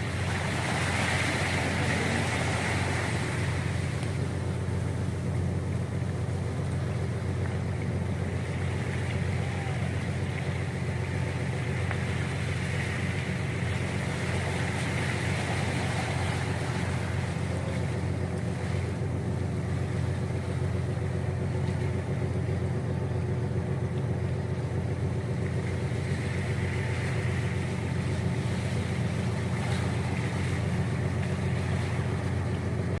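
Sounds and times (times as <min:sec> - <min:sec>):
ship engines droning: 0:00.0 - 0:33.0.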